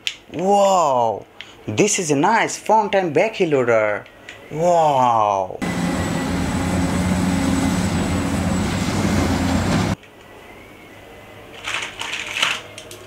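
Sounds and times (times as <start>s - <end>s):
engine-like hum and rumble: 5.6s - 10.0s.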